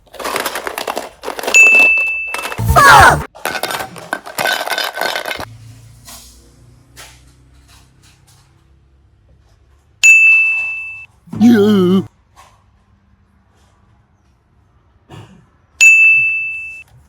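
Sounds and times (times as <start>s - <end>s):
clinking clatter: 0.2s - 2.6s, 3.5s - 5.5s
bright ringing ding: 10.0s - 11.1s, 15.8s - 16.8s.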